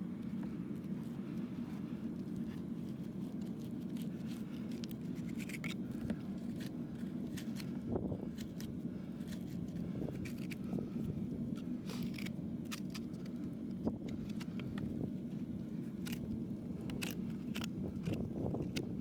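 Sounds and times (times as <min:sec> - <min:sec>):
steady low hum: 0:00.0 - 0:19.0
tools scraping hoof: 0:02.2 - 0:10.9, 0:15.8 - 0:19.0.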